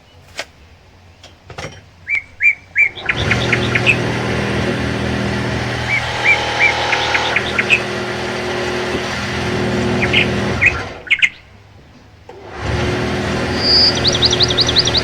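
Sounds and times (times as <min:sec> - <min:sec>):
small birds chirping: 0:00.0 - 0:15.0
steady mechanical hum: 0:00.0 - 0:15.0.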